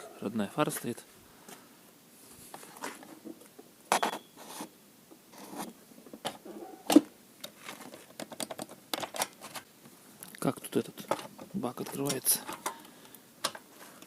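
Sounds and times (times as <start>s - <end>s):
handling rustles and clicks: 5.5s - 10.4s, 11.0s - 14.0s.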